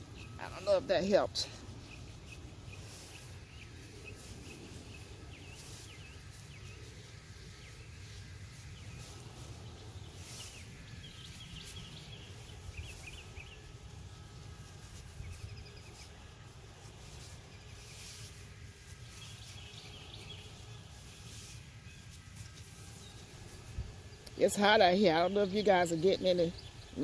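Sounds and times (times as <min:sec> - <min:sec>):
hands rustling dry soil: 0:00.0 - 0:27.0
small birds chirping: 0:00.0 - 0:27.0
steady low hum: 0:00.0 - 0:27.0.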